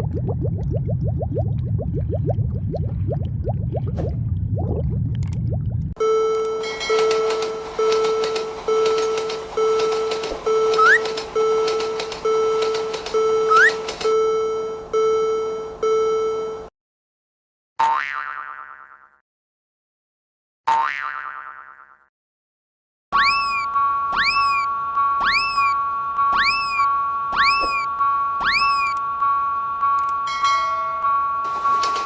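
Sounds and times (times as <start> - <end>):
railroad crossing bell ringing: 6.0 - 15.7, 29.0 - 32.0
rising whistle chirps: 13.5 - 13.8, 23.2 - 29.0
cartoon boing glide: 20.7 - 22.1.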